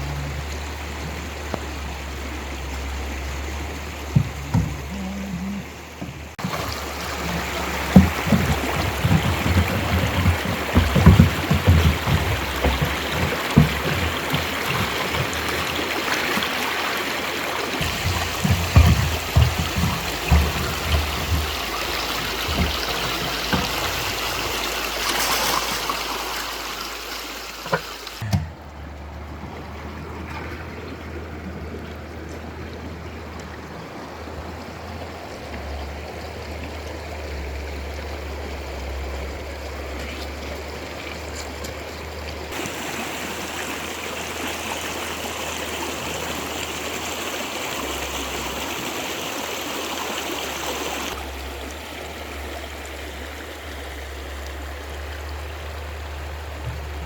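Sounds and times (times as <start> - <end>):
flowing water rushing: 0.0 - 57.0
low knocks: 3.9 - 15.8, 17.7 - 24.9, 56.6 - 57.0.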